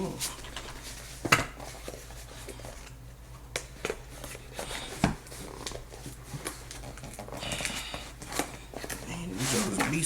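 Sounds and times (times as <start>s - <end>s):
packaging rustling: 0.0s - 10.0s.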